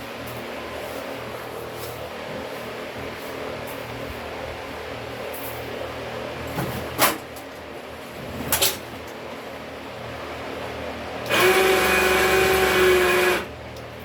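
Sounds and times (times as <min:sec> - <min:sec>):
electric motor running: 0:11.3 - 0:13.5.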